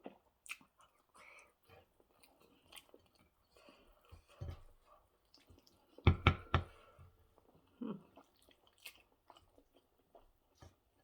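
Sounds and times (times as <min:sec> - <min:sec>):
person chewing: 0:00.1 - 0:04.3, 0:07.4 - 0:11.0.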